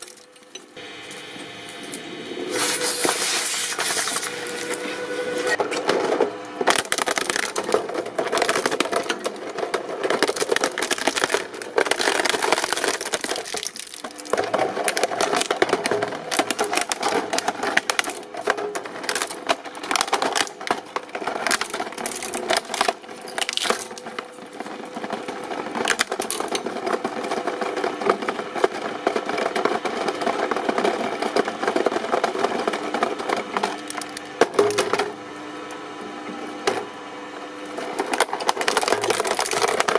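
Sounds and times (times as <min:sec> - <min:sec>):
faint machine hum: 0:00.0 - 0:39.9
object crackling and snapping: 0:10.2 - 0:18.2.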